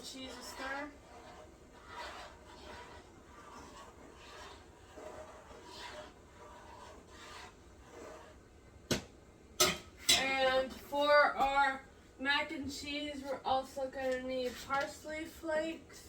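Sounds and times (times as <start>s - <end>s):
spoon scraping a pot: 0.0s - 8.6s.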